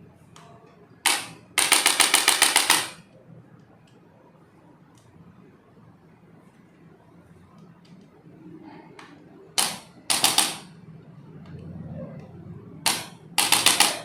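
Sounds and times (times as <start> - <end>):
sharp cracks of chiropractic treatment: 1.0 - 3.0, 9.6 - 10.8, 12.9 - 14.0.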